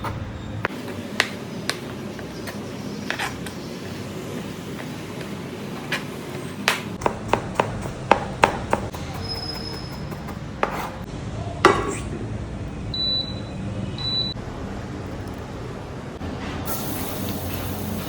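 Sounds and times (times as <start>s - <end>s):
knife chopping on cutting board: 6.6s - 11.0s.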